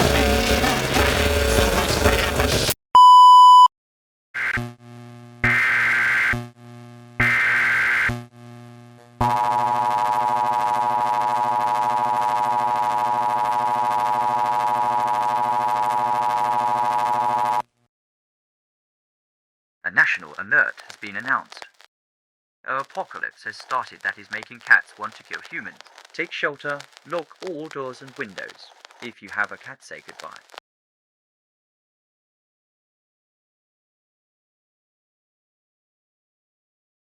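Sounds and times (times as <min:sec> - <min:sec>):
digital data bursts: 0:00.0 - 0:02.8
short electronic beep: 0:03.0 - 0:03.7
two-tone alarm: 0:09.2 - 0:17.6.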